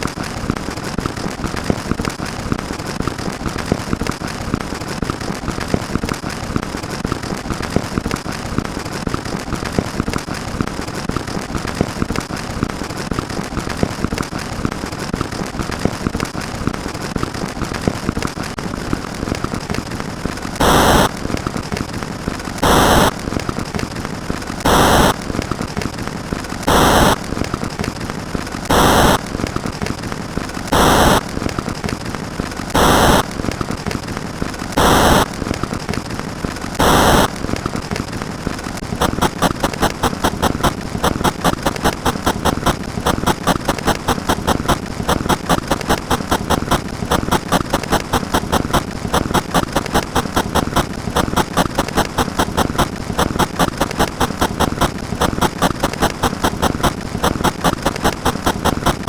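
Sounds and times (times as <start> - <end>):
dense crackling: 0.0 - 59.0
short loud bursts: 20.6 - 21.1, 22.6 - 23.2, 28.7 - 29.2.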